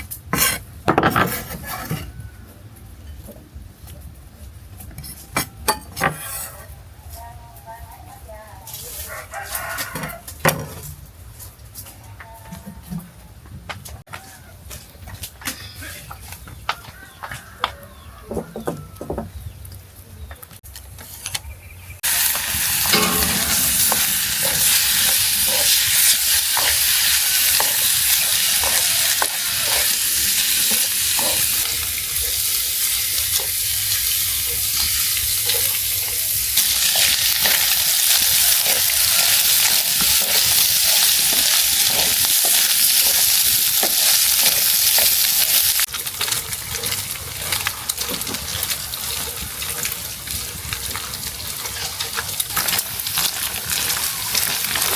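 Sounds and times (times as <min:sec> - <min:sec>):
food sizzling in hot oil: 0:22.0 - 0:54.9
utensil knocking in pan: 0:22.6 - 0:26.7.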